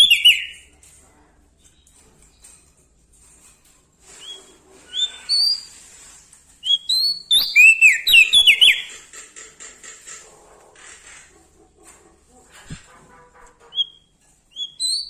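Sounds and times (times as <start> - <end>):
songbird whistling: 0.0 - 0.6, 6.6 - 8.9, 13.7 - 15.0.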